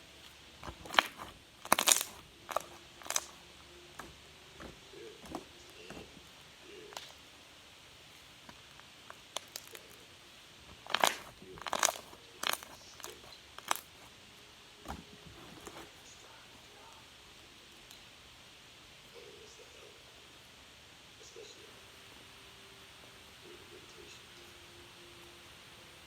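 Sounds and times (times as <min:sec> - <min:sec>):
sharp crackles and crunchy clicks: 0:00.0 - 0:14.2.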